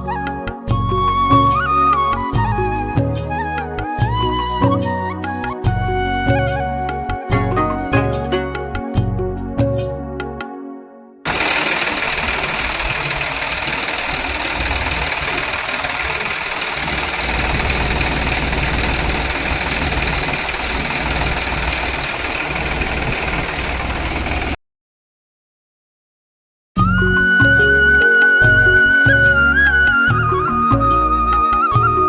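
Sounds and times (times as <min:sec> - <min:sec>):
small motor running rattly: 0:11.3 - 0:24.6, 0:27.1 - 0:30.2.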